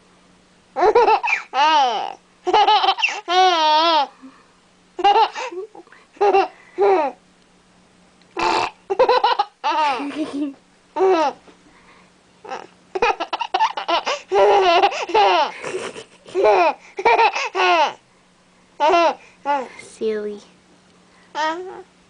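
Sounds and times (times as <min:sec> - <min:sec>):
baby giggling and squealing: 0:00.8 - 0:04.1, 0:08.4 - 0:10.4, 0:12.5 - 0:18.0.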